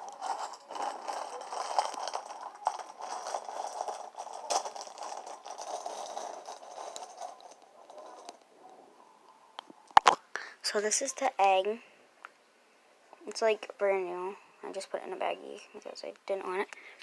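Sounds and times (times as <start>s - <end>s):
scraping crinkling handling noise: 0.0s - 8.5s.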